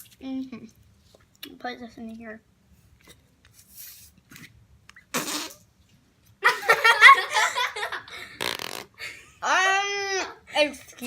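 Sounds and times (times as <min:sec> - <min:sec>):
fart-like noise: 0:05.0 - 0:05.7, 0:08.3 - 0:09.0
child laughing: 0:06.4 - 0:08.2.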